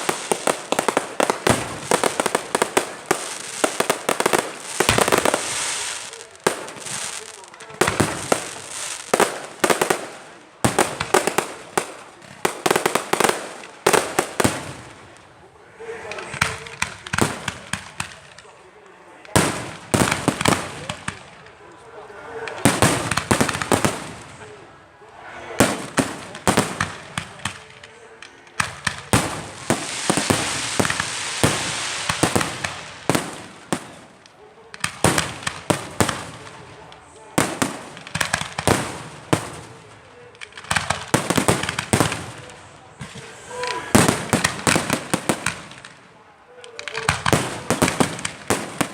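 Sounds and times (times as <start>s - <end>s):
fireworks hissing rush: 0.0s - 14.9s, 28.6s - 34.3s
firecrackers banging: 0.0s - 15.4s, 16.1s - 18.6s, 19.3s - 21.6s, 22.4s - 24.6s, 25.6s - 48.9s.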